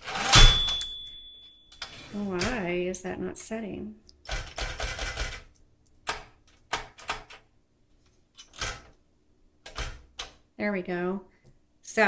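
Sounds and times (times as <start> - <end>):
typewriter rattling clatter: 4.3 - 5.5, 8.4 - 8.9.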